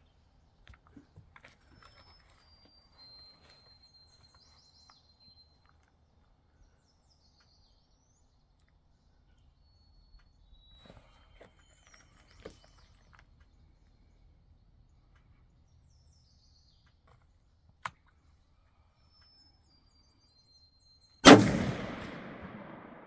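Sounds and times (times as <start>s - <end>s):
faint bird chirps: 1.7s - 17.0s
rifle shot with echo: 21.2s - 23.0s
sharp click: 21.2s - 23.0s.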